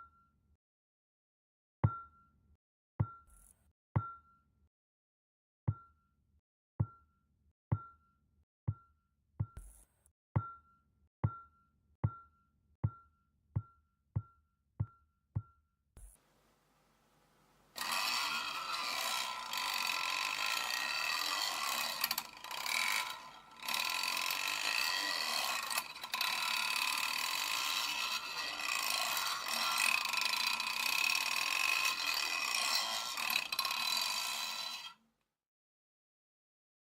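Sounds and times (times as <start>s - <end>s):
magnets buzzing rattle: 17.8s - 34.9s.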